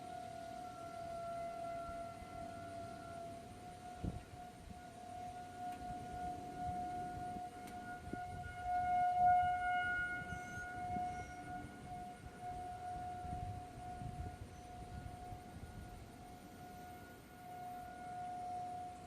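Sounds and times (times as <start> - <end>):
warning siren steady tone: 0.0 - 19.0.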